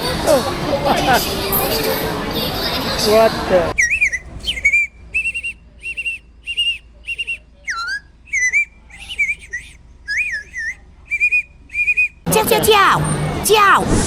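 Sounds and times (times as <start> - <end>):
bird-call whistle chirps: 3.8 - 12.2.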